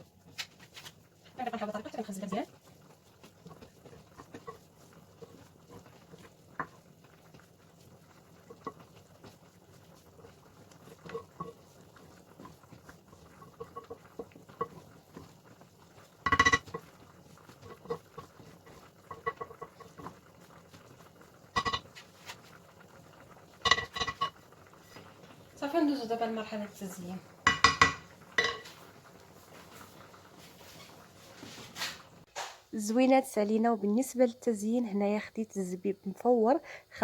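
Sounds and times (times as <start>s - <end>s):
spoon tapping and scraping dish: 3.4s - 6.8s, 8.4s - 8.9s, 10.7s - 11.6s, 12.4s - 15.3s, 16.2s - 20.3s, 21.6s - 22.0s, 23.6s - 24.4s, 27.4s - 28.8s
utensil clinking on dishware: 23.7s - 24.3s, 27.5s - 28.7s.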